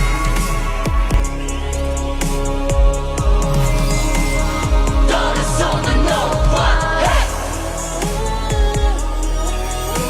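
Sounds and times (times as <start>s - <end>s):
steady kick drum: 0.0s - 1.7s
electronic pop music: 0.0s - 10.0s
wordless gliding vocal: 0.0s - 10.0s.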